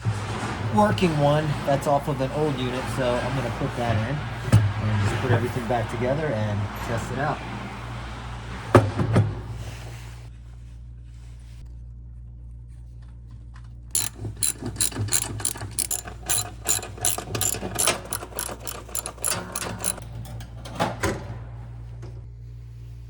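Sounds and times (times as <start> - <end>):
ratchet wrench clicking: 13.9 - 20.0.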